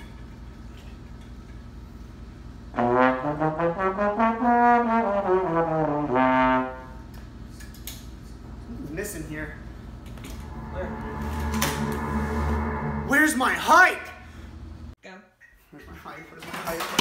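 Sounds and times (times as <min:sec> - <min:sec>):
low room hum: 0:00.0 - 0:16.9
brass instrument melodic phrase: 0:10.4 - 0:14.0.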